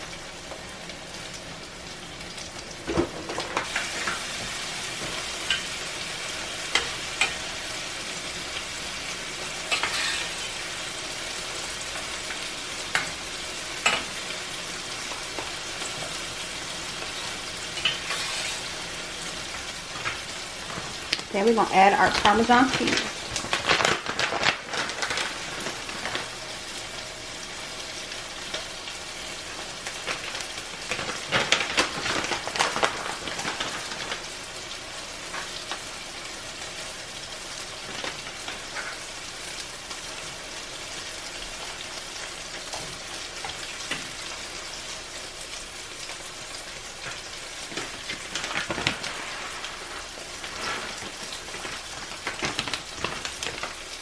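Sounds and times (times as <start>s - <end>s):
sauce sizzling in a pan: 0.0s - 54.0s.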